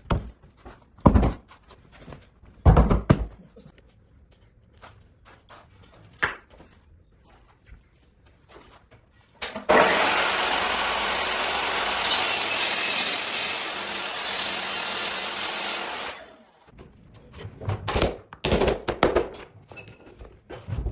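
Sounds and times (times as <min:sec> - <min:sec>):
power tool rasping wood: 0:09.7 - 0:16.3
handling knocks and clatters: 0:16.8 - 0:20.9.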